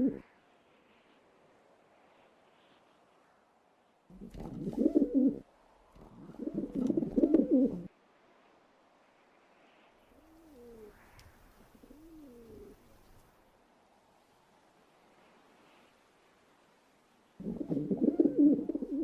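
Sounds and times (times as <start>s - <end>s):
pigeons cooing: 0.0s - 0.3s, 4.1s - 5.4s, 6.0s - 7.9s, 10.2s - 11.0s, 11.6s - 12.9s, 17.4s - 19.0s.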